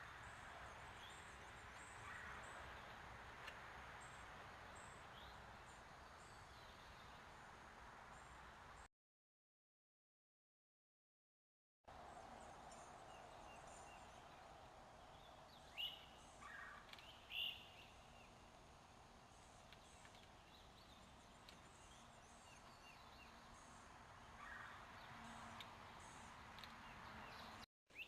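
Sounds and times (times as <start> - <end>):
steady background hiss: 11.9 - 26.9.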